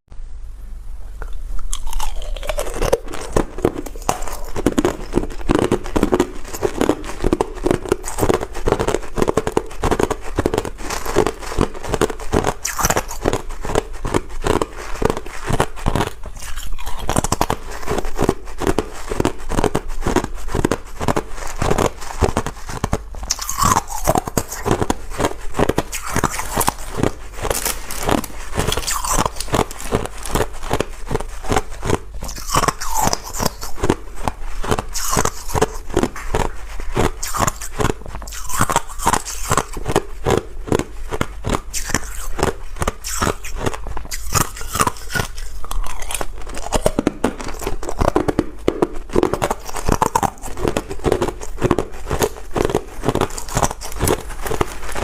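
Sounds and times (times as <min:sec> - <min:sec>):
person chewing ice crunching: 0:01.2 - 0:55.0.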